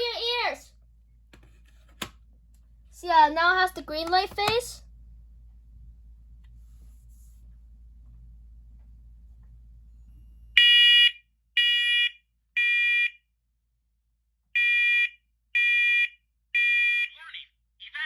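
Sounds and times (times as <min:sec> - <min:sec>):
smoke alarm high-pitched beeps: 0:10.6 - 0:13.2, 0:14.6 - 0:17.1.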